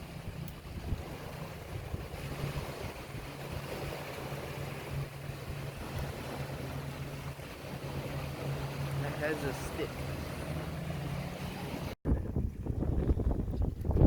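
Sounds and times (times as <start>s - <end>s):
wind noise on microphone: 0.0s - 6.6s, 11.2s - 14.0s
motorboat engine drone: 0.0s - 14.0s.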